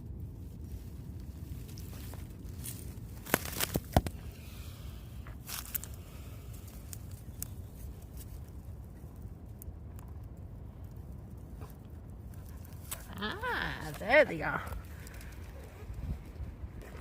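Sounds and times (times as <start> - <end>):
crackles and rustles: 0.0 - 17.0
low wind rumble: 0.0 - 17.0.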